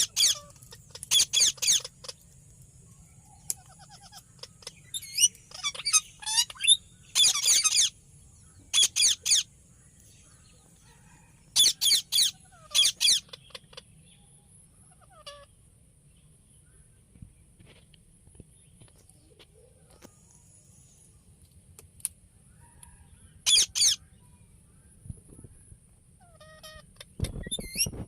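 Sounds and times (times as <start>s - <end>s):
parakeet squawking: 0.0s - 2.2s, 3.6s - 7.9s, 8.7s - 9.5s, 11.6s - 13.8s, 23.5s - 24.0s.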